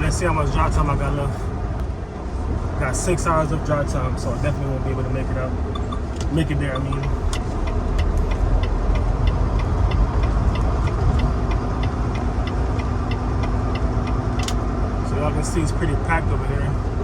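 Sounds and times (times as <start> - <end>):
diesel engine low rumble: 0.0 - 17.0
light ticking: 5.7 - 14.6.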